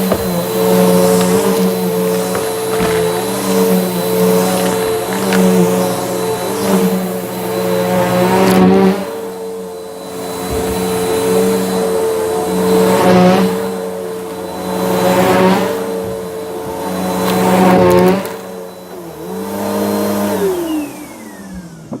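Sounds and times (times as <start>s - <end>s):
brushroll crunching debris: 0.0s - 6.0s
vacuum cleaner motor whine: 0.0s - 22.0s.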